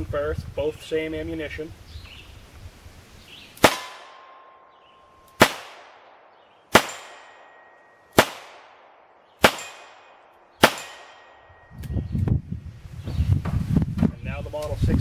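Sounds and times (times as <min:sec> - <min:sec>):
revolver shots with echo: 0:03.6 - 0:11.6.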